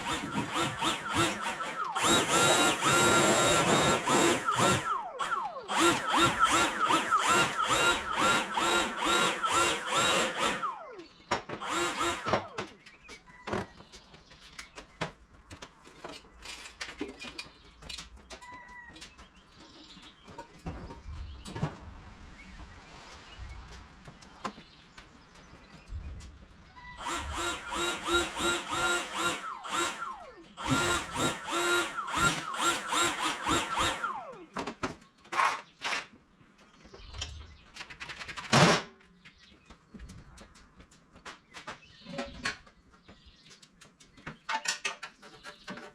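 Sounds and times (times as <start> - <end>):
small high-revving motor pulsing: 0.0 - 11.0, 11.6 - 12.5, 27.0 - 34.4.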